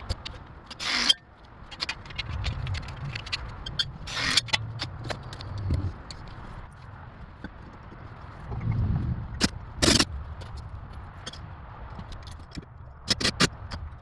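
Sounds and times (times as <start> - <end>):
low rumble: 8.3 - 9.8.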